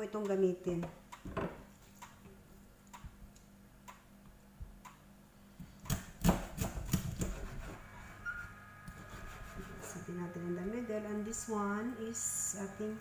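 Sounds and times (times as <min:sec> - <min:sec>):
knife cutting on a cutting board: 0:05.8 - 0:07.8, 0:08.9 - 0:09.9.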